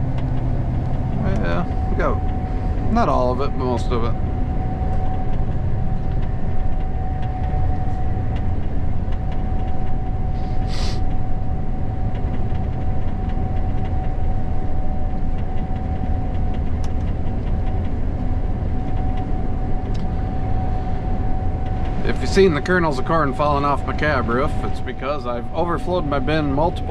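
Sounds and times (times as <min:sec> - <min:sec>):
combine harvester drone and whine: 0:00.0 - 0:26.9
brief hiss: 0:10.4 - 0:11.0.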